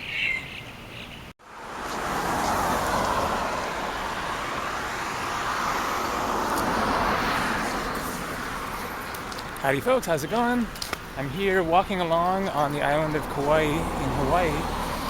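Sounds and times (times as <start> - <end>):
car driving past: 1.4 - 9.4, 13.1 - 15.0.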